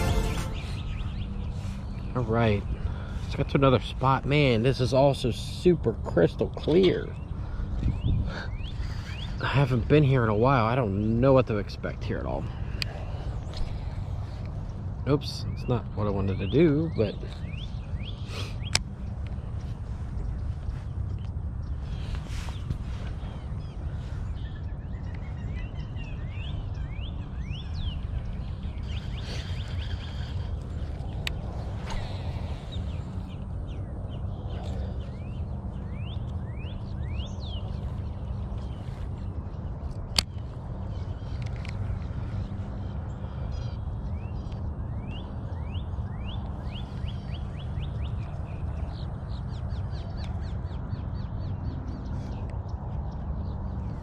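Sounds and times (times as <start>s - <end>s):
bird calling rising notes: 0.0s - 1.9s
bird chirping: 0.0s - 3.5s, 11.8s - 54.0s
steady low rumble: 0.0s - 54.0s.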